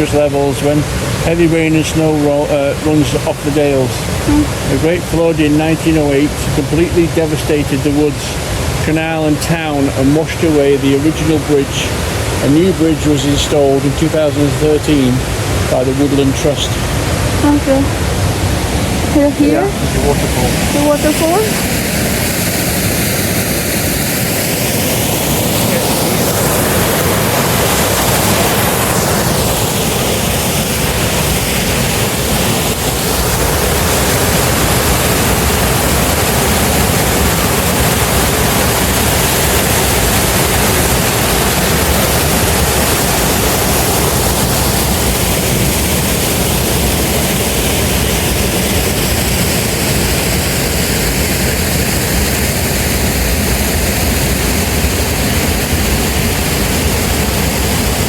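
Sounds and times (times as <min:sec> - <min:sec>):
water pouring over a weir: 0:22.6 - 0:58.0.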